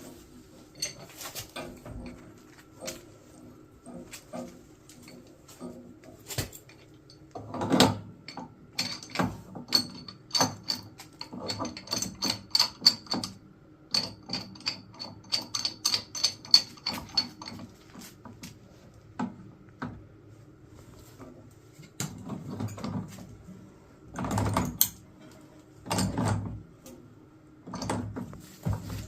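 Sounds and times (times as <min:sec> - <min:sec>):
metal tool clinking on pipe fittings: 0:00.7 - 0:02.2.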